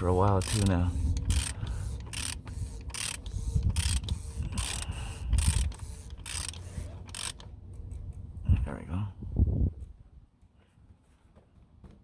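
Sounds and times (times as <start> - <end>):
socket ratchet clicking: 0.0 - 8.1.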